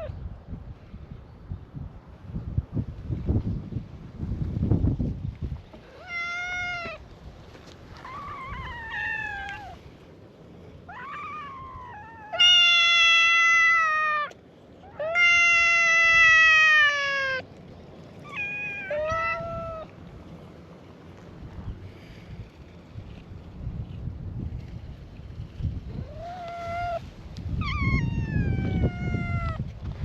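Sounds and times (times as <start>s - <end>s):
cats meowing: 5.8s - 7.0s, 8.0s - 9.8s, 10.9s - 17.4s, 18.2s - 19.9s, 26.0s - 29.6s.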